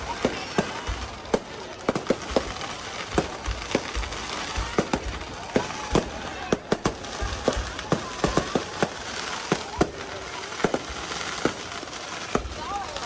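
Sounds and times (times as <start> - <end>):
deep fireworks thumps: 0.0 - 12.8
continuous crackling: 0.0 - 13.0
fireworks bangs: 0.0 - 13.0.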